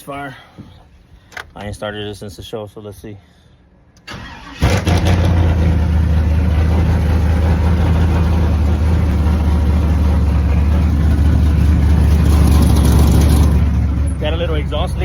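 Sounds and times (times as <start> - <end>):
truck engine idling: 4.2 - 15.0.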